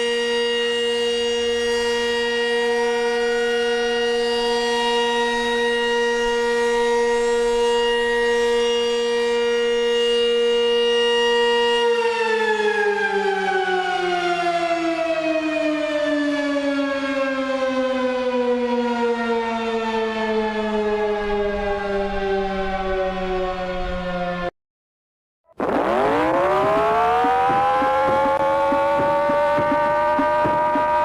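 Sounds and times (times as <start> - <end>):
civil defense siren wailing: 0.0 - 24.5, 25.5 - 31.0.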